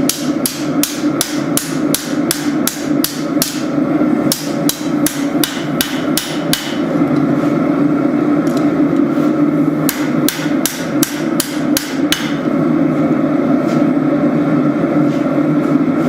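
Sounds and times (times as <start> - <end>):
hammer striking metal: 4.3 - 6.8, 9.9 - 12.4.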